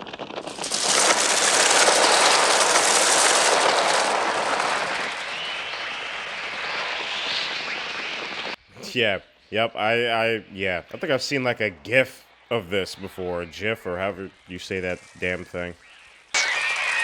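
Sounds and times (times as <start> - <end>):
rush of wings: 0.0 - 8.6.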